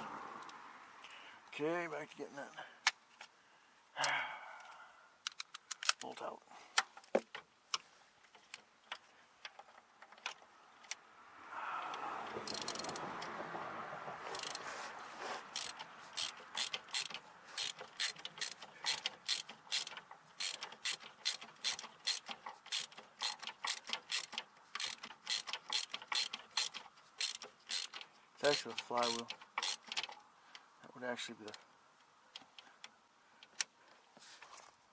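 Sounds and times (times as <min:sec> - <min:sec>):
socket ratchet clicking: 0:05.2 - 0:06.0, 0:12.4 - 0:13.3, 0:14.3 - 0:14.6, 0:15.5 - 0:30.2.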